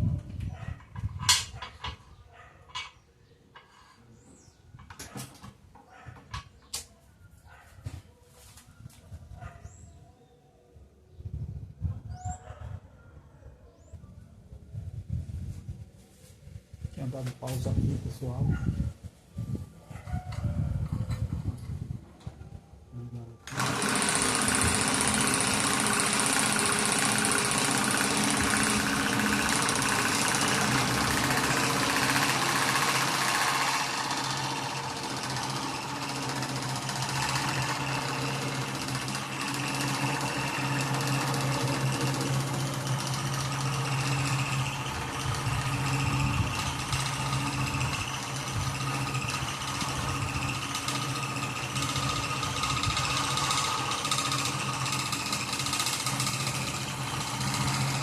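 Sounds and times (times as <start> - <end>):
drill press motor hum: 23.4 - 58.0.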